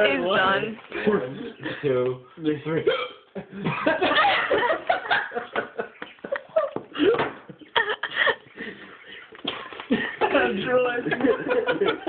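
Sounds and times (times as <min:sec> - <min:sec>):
group of people laughing: 0:03.3 - 0:12.0.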